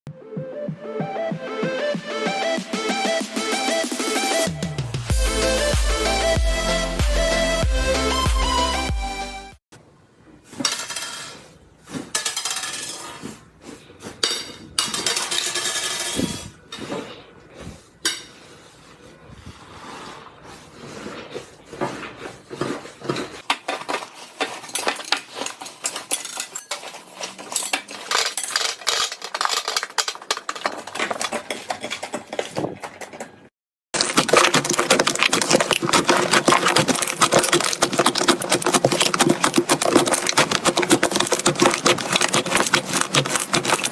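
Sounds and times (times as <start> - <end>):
slime crackling and popping: 34.0 - 43.9.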